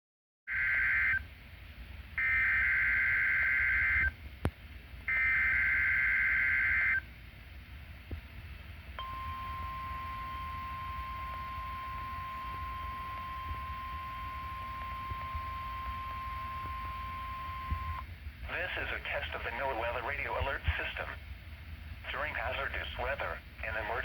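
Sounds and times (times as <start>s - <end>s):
radio receiver hum: 9.0s - 21.3s, 22.0s - 24.0s.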